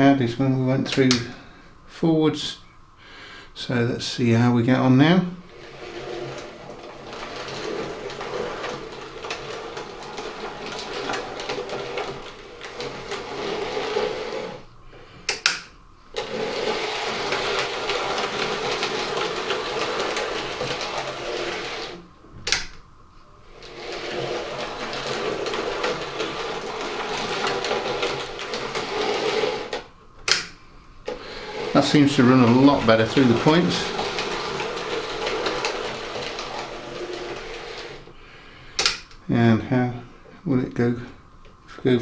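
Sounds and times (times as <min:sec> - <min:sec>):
model train motor whirring: 0:05.4 - 0:22.7, 0:23.5 - 0:38.2.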